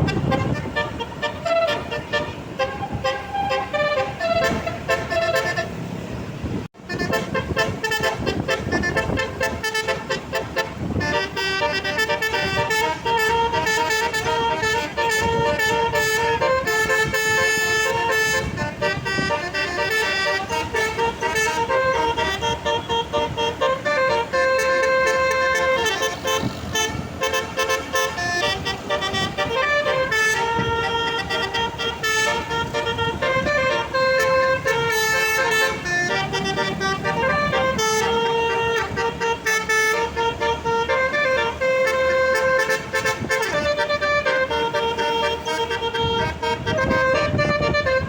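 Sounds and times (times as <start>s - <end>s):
multi-tone musical bus horn: 0.0s - 48.0s.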